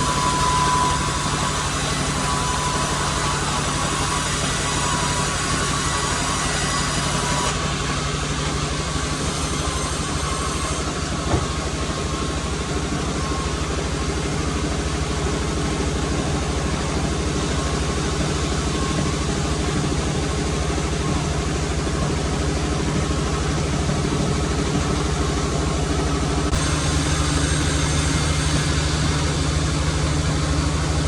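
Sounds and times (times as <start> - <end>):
sawmill machinery hum: 0.0 - 31.0
high whine: 15.9 - 31.0.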